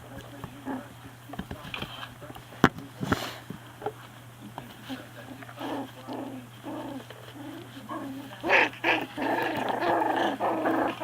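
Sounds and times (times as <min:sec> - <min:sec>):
puppies growling: 0:00.0 - 0:01.1, 0:04.8 - 0:11.0.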